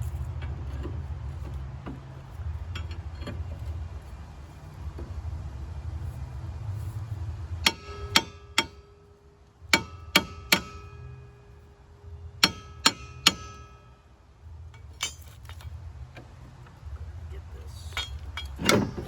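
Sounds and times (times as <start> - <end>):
hammer striking metal hub: 7.6 - 11.6, 12.4 - 14.1, 14.8 - 15.6.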